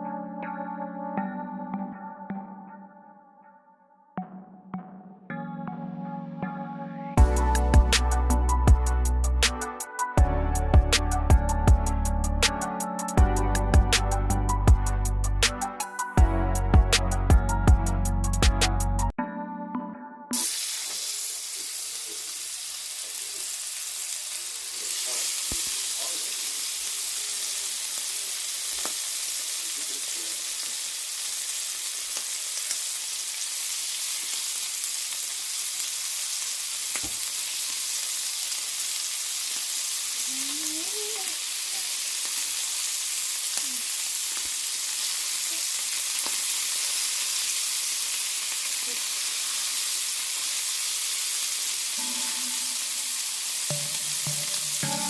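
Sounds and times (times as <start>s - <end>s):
meat sizzling in a pan: 20.4s - 55.0s.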